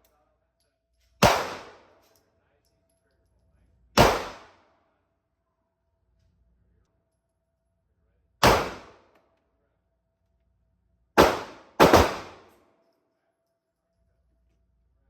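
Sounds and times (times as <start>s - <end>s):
gunshots with echo: 1.2s - 1.9s, 4.0s - 4.6s, 8.4s - 9.0s, 11.2s - 12.5s.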